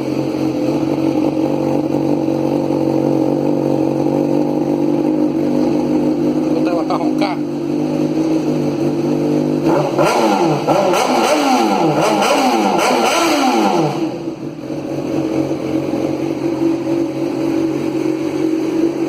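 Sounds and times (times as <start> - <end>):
motorcycle engine idling and revving: 0.0 - 19.0.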